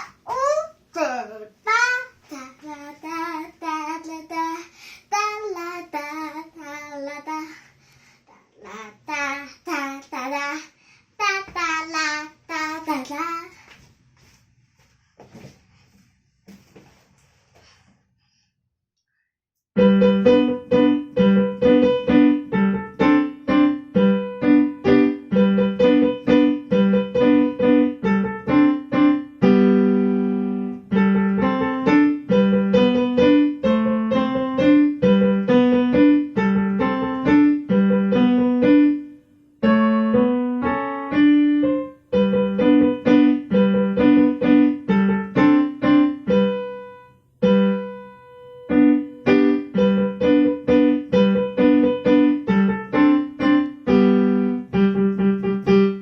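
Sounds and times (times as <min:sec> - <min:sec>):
piano-voiced keyboard tune: 0:19.8 - 0:56.0.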